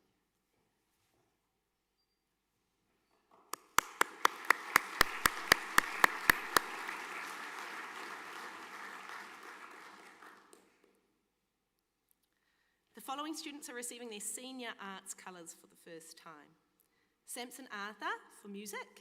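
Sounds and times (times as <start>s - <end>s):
close loud hand claps: 3.5s - 10.9s
audience applauding: 3.6s - 10.8s.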